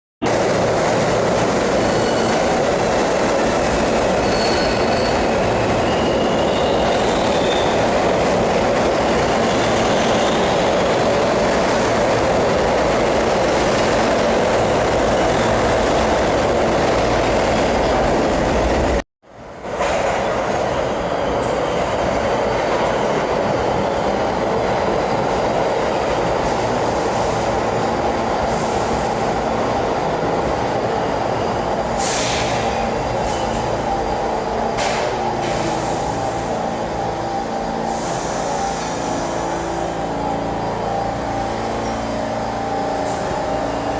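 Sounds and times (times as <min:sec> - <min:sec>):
subway train wheels rumbling: 0:00.2 - 0:43.9
faint wheel squeal: 0:04.2 - 0:07.8.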